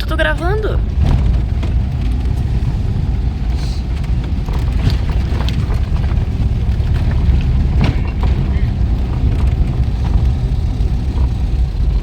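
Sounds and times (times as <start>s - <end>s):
van engine and road rumble: 0.0s - 12.0s.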